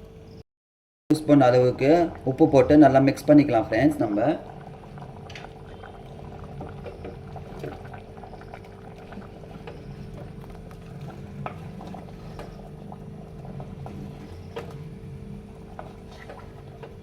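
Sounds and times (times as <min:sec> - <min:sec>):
curry bubbling in a clay pot: 0:01.1 - 0:17.0
steady low hum: 0:01.1 - 0:17.0.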